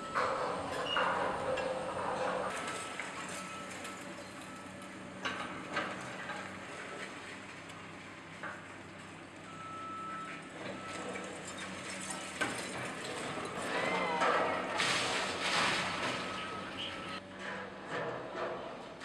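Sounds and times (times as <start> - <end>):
demolition machinery engine drone: 0.0 - 19.0.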